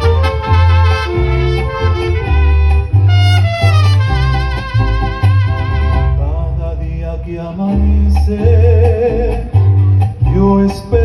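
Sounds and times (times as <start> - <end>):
vibrato trumpet phrase: 0.0 - 6.2
mariachi band playing: 0.0 - 11.0.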